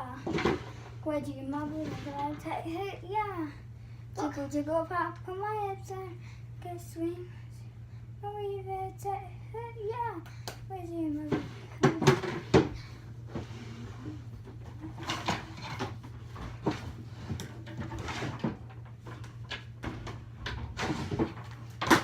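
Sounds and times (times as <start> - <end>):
objects knocking and bumping: 0.2 - 0.9, 11.3 - 22.0.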